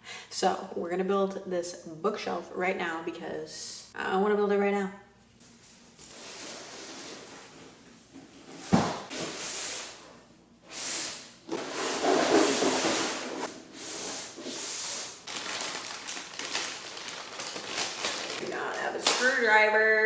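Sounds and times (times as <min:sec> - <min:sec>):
packaging rustling and scraping: 0:05.9 - 0:10.0, 0:11.5 - 0:18.8.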